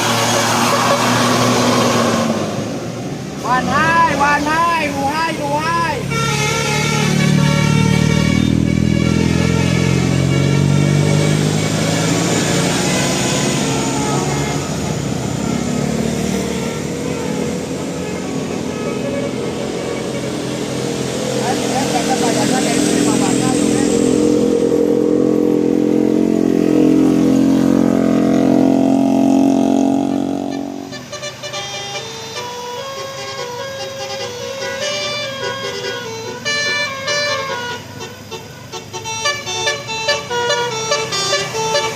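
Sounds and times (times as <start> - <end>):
bus engine driving past: 0.0 - 41.9
bus horn steady note: 5.8 - 20.9, 29.4 - 41.9.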